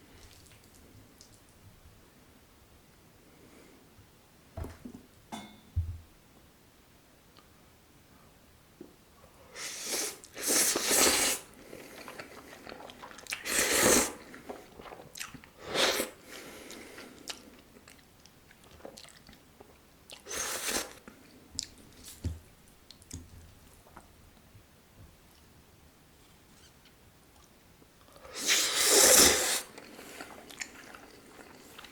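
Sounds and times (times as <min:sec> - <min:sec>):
chewing noodles: 0:11.6 - 0:15.5, 0:28.4 - 0:31.9
loud noisy eating bursts: 0:13.4 - 0:14.2, 0:28.3 - 0:30.3.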